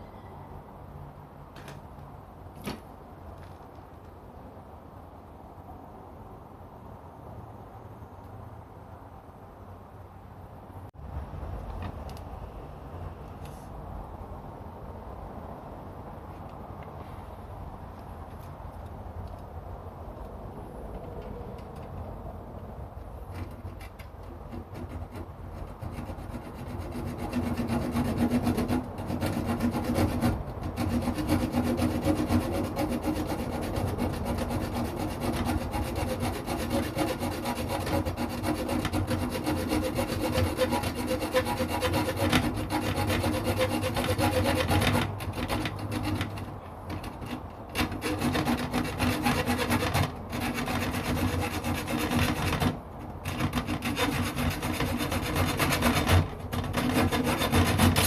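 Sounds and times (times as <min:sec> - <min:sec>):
hacksaw cutting metal: 0:23.3 - 0:58.0.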